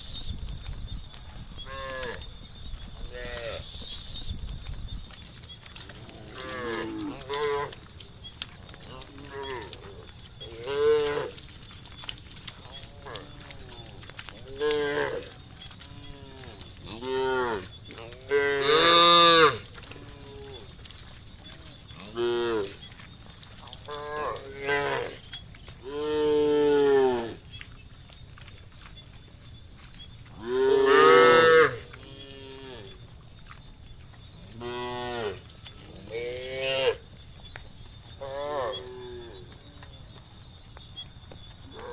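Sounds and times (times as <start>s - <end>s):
cows mooing: 6.0s - 7.8s, 8.8s - 11.5s, 12.6s - 20.7s, 21.5s - 22.8s, 23.8s - 25.2s, 30.4s - 33.0s.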